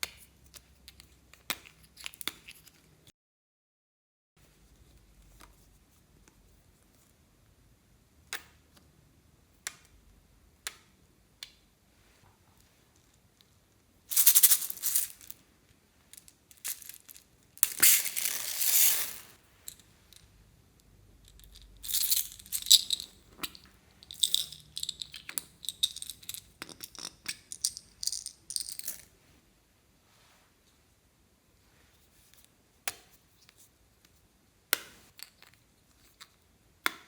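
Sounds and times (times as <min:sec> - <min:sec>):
slime crackling and rattling: 0:16.5 - 0:19.8.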